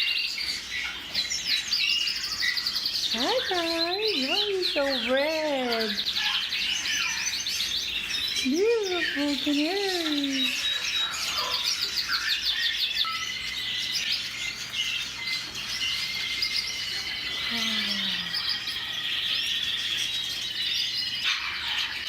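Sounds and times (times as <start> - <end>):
canaries chirping and singing: 0.0 - 22.0.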